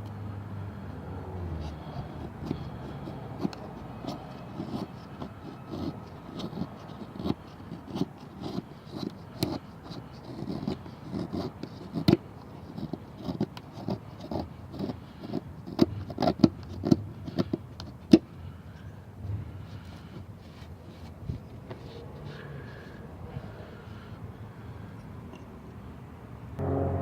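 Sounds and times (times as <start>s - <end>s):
knife blade scraping wood: 1.6s - 18.3s.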